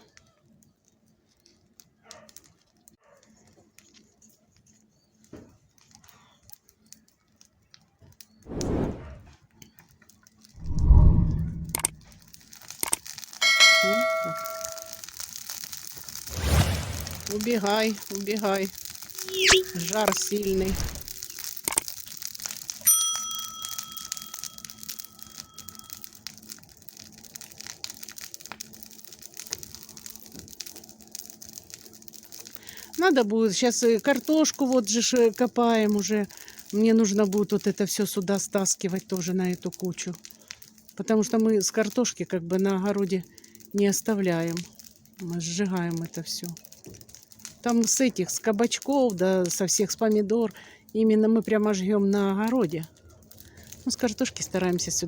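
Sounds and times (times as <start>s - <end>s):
fire crackling: 0.0s - 55.0s
muffled rushes: 8.5s - 9.3s, 10.6s - 12.2s, 19.3s - 21.2s
bell-like ring from sharp strike: 13.6s - 14.8s.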